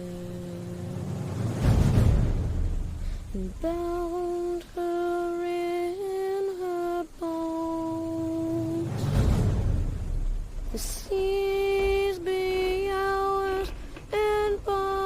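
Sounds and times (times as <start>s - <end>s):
person singing mournful melody: 0.0s - 1.5s, 3.1s - 9.4s, 10.6s - 15.0s
breaths: 2.9s - 3.4s, 13.7s - 14.1s.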